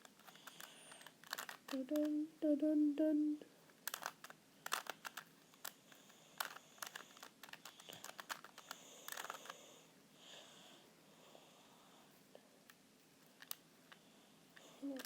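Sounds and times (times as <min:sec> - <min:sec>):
puzzle cube clicking as turned: 0:00.0 - 0:02.2, 0:03.7 - 0:09.6, 0:12.7 - 0:14.0.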